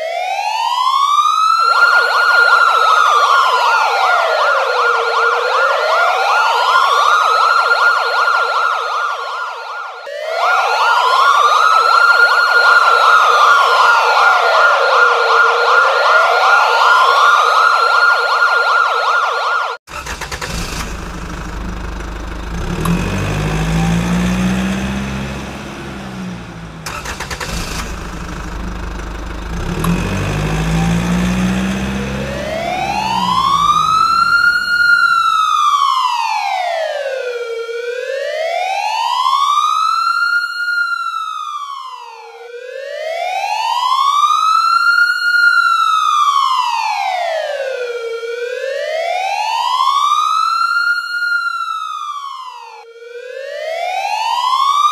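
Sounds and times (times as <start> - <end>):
electronic police siren wail: 0.0 - 54.9.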